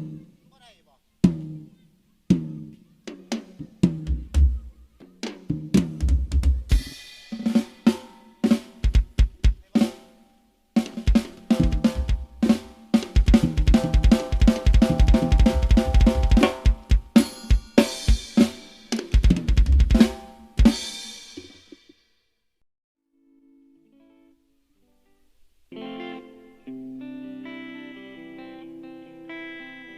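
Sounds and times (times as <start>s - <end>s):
drum kit through a pa system: 0.0s - 10.2s, 10.8s - 22.0s
crash cymbals ringing: 12.5s - 19.0s.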